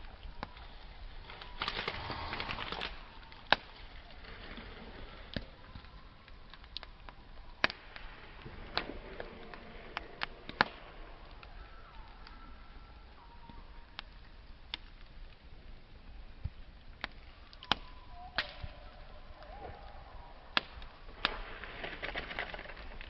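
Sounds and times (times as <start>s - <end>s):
campfire crackling: 0.0s - 23.0s
steady hiss: 0.0s - 23.0s
sharp pops of fire: 5.3s - 12.4s, 16.4s - 23.0s.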